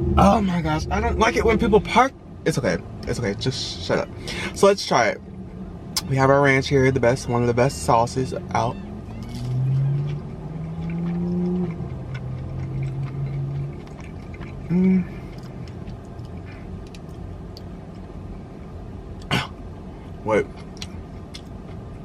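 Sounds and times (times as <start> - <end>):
chewing clicks: 9.1 - 18.1, 20.6 - 21.8
woman humming: 14.7 - 15.2.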